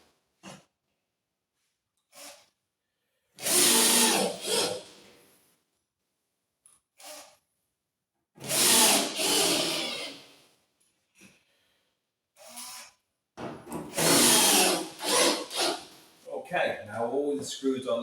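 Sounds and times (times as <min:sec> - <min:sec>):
power drill driving screws: 0:02.1 - 0:02.5, 0:03.4 - 0:05.0, 0:07.0 - 0:07.3, 0:08.4 - 0:10.4, 0:12.4 - 0:13.0, 0:13.8 - 0:15.9.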